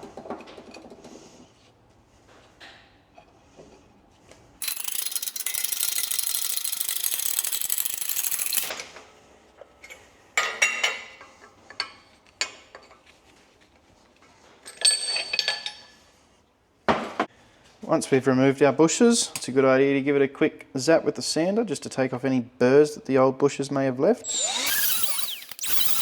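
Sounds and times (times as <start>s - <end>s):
ratchet tool clicking rapidly: 4.6s - 8.7s, 24.3s - 26.0s.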